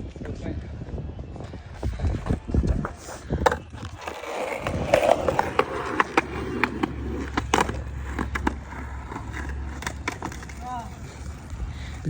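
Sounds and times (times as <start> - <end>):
skateboard rolling on pavement: 0.2 - 12.0
skateboard clack: 2.6 - 11.4.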